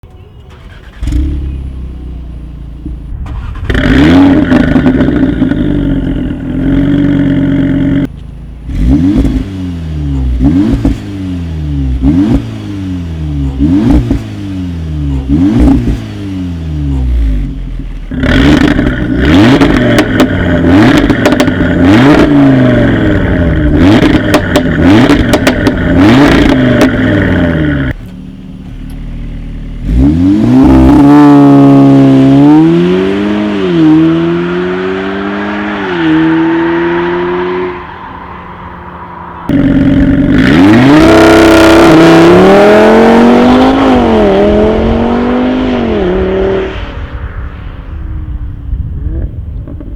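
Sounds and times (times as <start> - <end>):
car engine revving: 0.5 - 49.9
exhaust crackles: 0.5 - 49.9
car accelerating through gears: 29.8 - 47.2.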